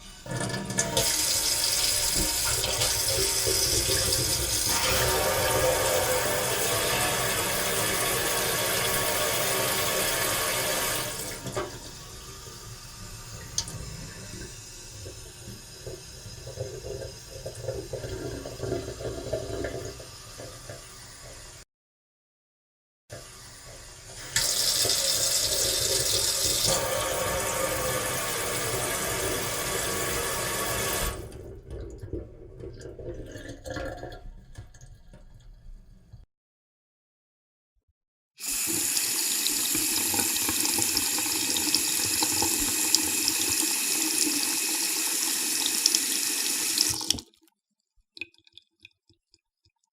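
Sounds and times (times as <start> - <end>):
faucet running: 0.0 - 21.6, 23.2 - 31.4, 38.4 - 47.4
water dripping: 13.4 - 14.1, 46.7 - 49.9.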